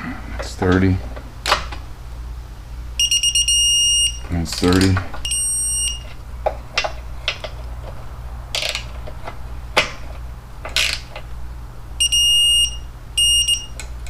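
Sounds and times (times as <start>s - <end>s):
torque wrench high beep: 3.0s - 4.2s, 5.2s - 6.1s, 12.0s - 13.8s.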